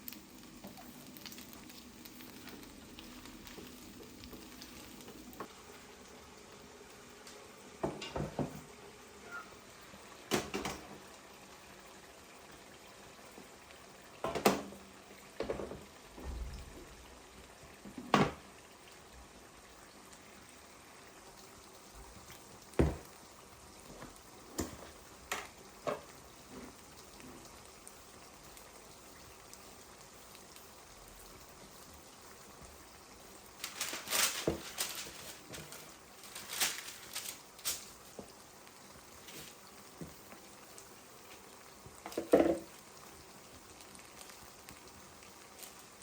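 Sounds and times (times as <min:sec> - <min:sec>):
faint steady hiss: 0:00.0 - 0:46.0
kitchen knocks and clinks: 0:07.8 - 0:08.6, 0:42.1 - 0:42.7.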